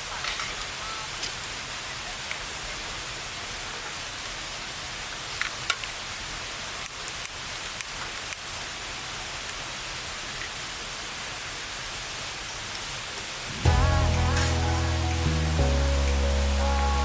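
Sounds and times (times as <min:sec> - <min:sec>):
steady rushing hiss: 0:12.2 - 0:17.0.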